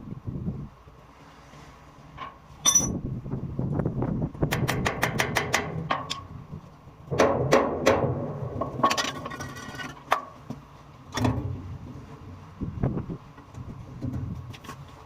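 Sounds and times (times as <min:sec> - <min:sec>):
metal tools tapping on metal: 0:02.6 - 0:03.0.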